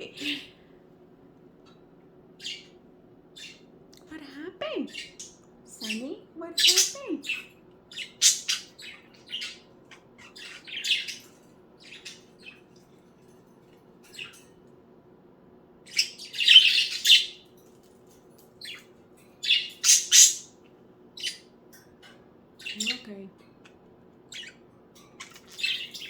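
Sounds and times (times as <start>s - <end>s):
budgerigars chirping: 2.4s - 3.7s, 4.9s - 12.6s, 15.9s - 17.5s, 18.6s - 20.6s, 21.2s - 21.5s, 22.6s - 23.2s, 24.3s - 24.6s, 25.2s - 26.0s.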